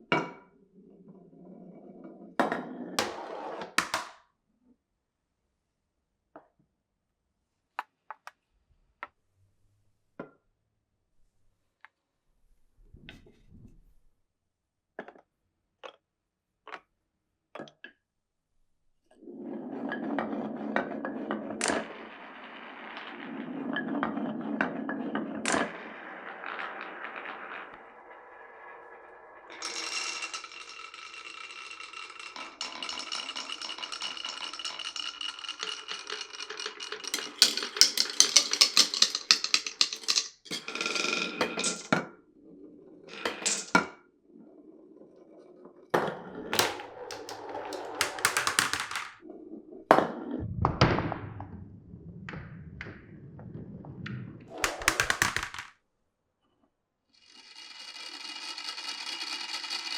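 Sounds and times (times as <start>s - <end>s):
glass marbles rolling on wood: 2.0s - 4.2s, 19.3s - 42.1s, 43.1s - 44.0s, 46.0s - 49.3s, 53.8s - 55.7s, 57.3s - 59.9s
marbles clacking against wood: 3.0s - 4.2s, 25.4s - 42.0s, 43.2s - 43.9s, 46.5s - 49.3s, 54.5s - 55.7s
low rumble: 50.3s - 54.6s.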